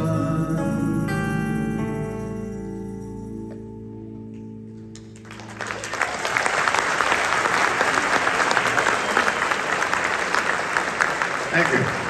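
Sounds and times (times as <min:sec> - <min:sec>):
audience applause: 0:04.9 - 0:12.0.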